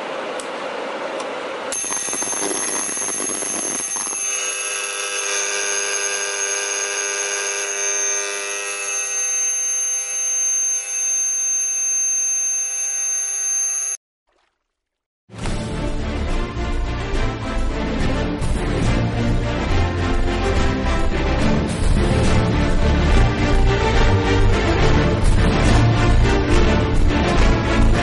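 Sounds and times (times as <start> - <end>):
electronic fire alarm buzzer: 1.7 - 14.0.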